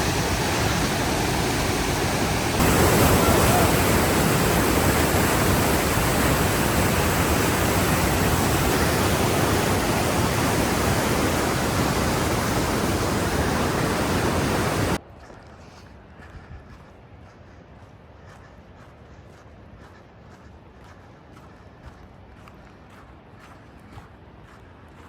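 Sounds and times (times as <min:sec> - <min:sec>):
river rushing: 0:00.0 - 0:15.0.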